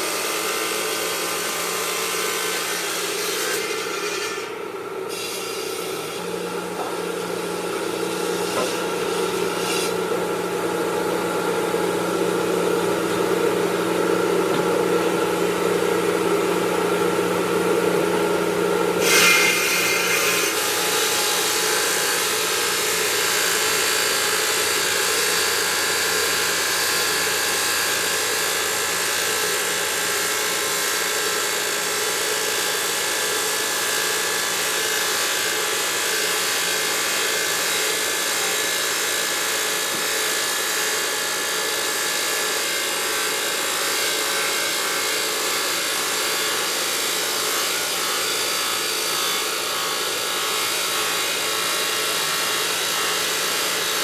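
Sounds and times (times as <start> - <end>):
stone grinding machinery: 0.2 - 16.6, 17.6 - 29.6.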